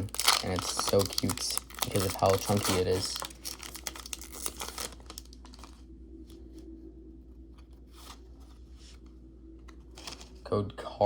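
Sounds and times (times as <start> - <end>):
foil wrapper crinkling and tearing: 0.0 - 5.8
low steady hum: 0.0 - 11.0
cards being handled: 9.6 - 10.4.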